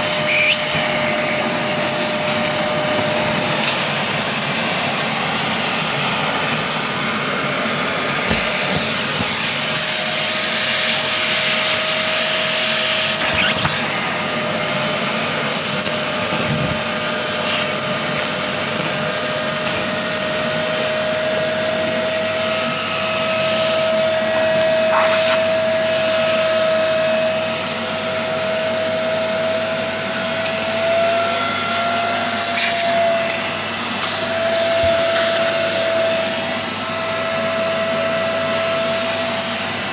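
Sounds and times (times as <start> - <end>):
workshop vacuum running: 0.0 - 39.9
whistling tone: 0.2 - 0.9.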